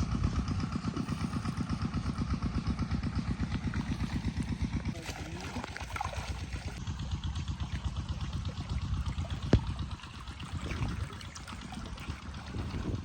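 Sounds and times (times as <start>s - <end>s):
diesel pump engine running: 0.0s - 13.0s
water pouring and splashing: 3.6s - 13.0s.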